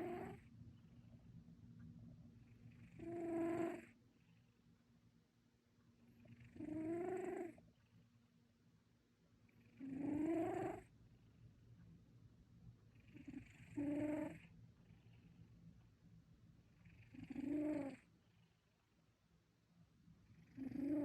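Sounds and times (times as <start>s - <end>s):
cat snoring: 0.0s - 0.5s, 2.5s - 4.4s, 6.1s - 7.6s, 9.5s - 10.9s, 12.9s - 15.4s, 16.7s - 18.6s, 20.2s - 21.0s
faint low rumble: 0.0s - 21.0s.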